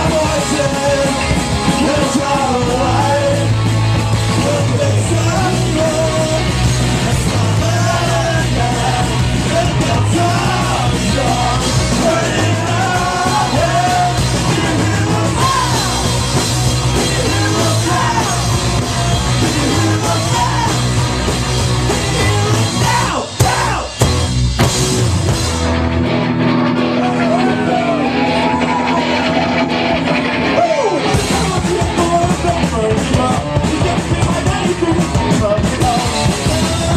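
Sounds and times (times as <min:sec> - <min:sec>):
driving bass: 0:00.0 - 0:36.9
rock band playing loud: 0:00.0 - 0:36.9
person shouting singing: 0:04.4 - 0:16.2, 0:16.8 - 0:20.9, 0:21.9 - 0:24.0, 0:27.0 - 0:36.9.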